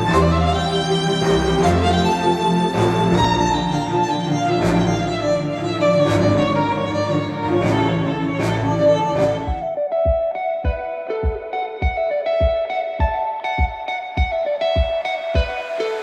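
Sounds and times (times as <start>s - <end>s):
orchestral string music: 0.0s - 10.6s
plucked guitar notes: 0.0s - 16.0s.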